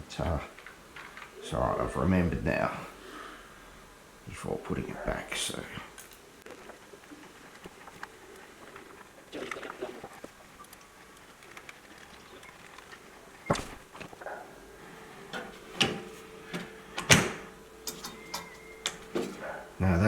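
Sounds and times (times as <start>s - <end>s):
metal plate and screws clicking: 17.8s - 19.3s.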